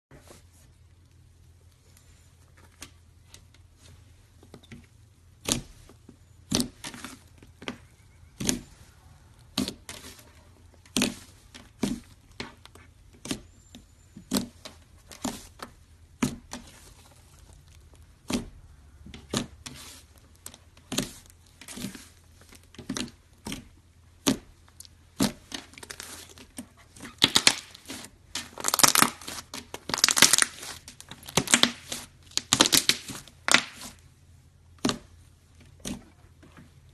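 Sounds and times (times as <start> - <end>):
slime popping and crackling: 27.1 - 34.0.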